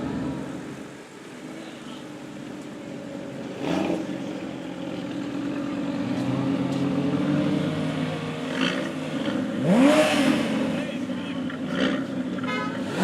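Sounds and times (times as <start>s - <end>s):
sports car engine revving: 3.4s - 13.0s.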